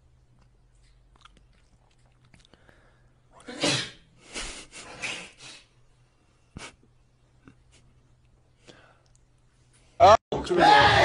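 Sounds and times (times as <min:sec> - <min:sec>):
person sneezing: 0:03.4 - 0:04.0.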